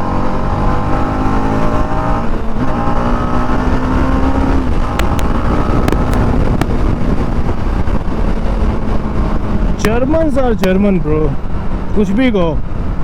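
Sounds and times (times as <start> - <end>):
motorcycle engine running: 0.0 - 12.0
sharp clicks: 4.9 - 6.8.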